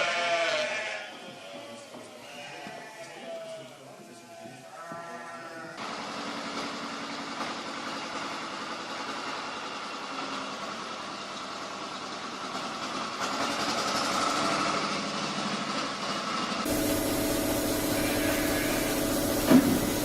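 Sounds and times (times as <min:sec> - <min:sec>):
machinery hum with hiss: 0:16.2 - 0:20.0.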